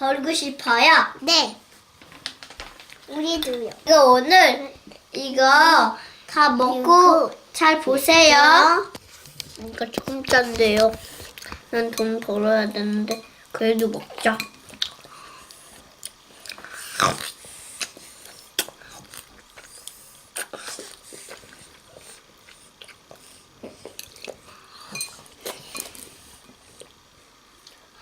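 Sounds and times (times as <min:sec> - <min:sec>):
person chewing: 0:13.9 - 0:28.0.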